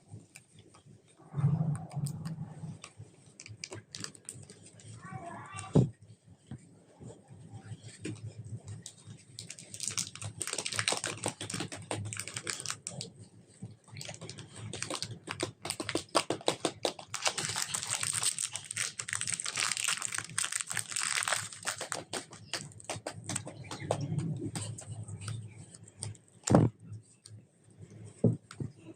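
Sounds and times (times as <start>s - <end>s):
slime kneaded by hand: 7.6s - 27.2s.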